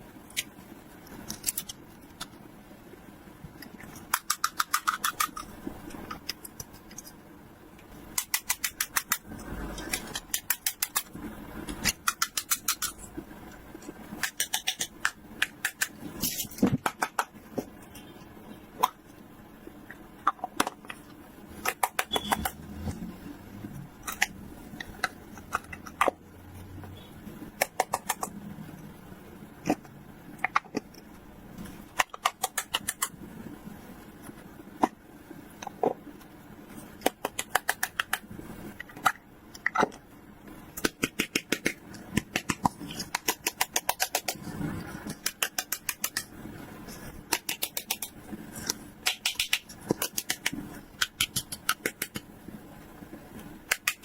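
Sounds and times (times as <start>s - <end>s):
plastic toy pieces clicking: 3.9s - 5.5s, 8.2s - 9.2s, 11.8s - 13.0s, 45.1s - 46.3s, 47.3s - 52.2s.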